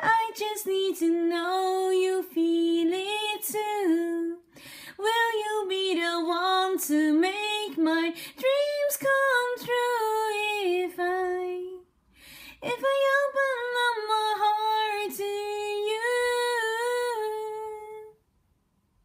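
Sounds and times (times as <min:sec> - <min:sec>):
woman singing a cappella: 0:00.0 - 0:11.9, 0:12.5 - 0:18.2
breath: 0:04.5 - 0:05.0, 0:08.1 - 0:08.4, 0:12.0 - 0:12.6.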